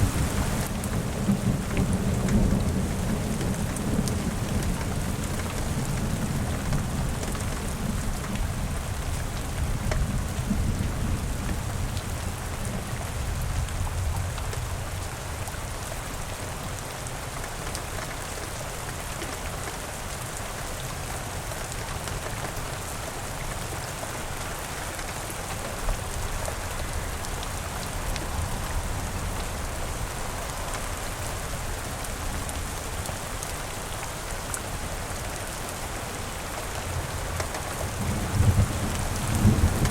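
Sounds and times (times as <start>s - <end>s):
steady rain falling: 0.0s - 39.9s
low rumble of thunder: 37.8s - 39.9s.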